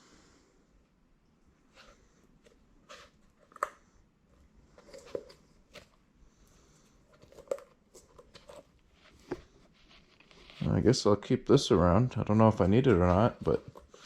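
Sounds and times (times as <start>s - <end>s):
soft rustling: 1.6s - 14.0s.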